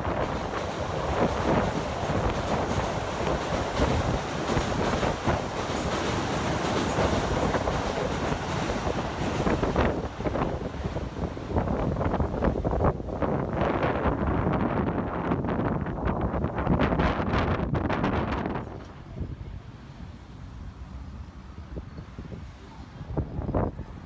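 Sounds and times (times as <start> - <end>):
train wheels running on rails: 0.0 - 13.7.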